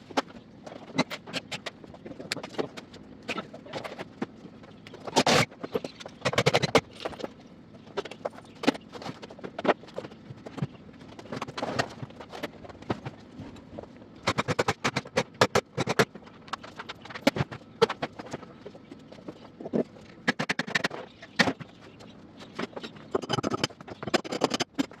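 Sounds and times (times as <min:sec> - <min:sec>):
hard objects clicking and knocking: 0:22.6 - 0:25.0.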